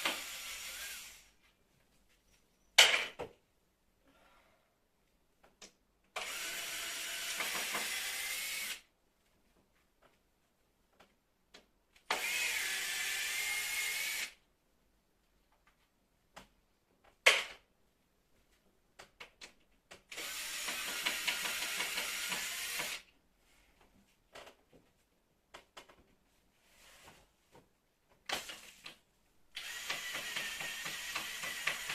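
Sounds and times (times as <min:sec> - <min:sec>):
small clicks and handling noises: 0:23.8 - 0:26.2
power tool running: 0:29.6 - 0:31.9.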